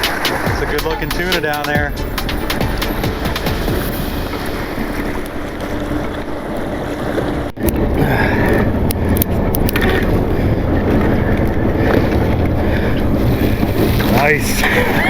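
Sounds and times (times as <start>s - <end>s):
boat engine running: 0.0s - 15.0s
water noise: 0.0s - 15.0s
wind: 0.0s - 15.0s.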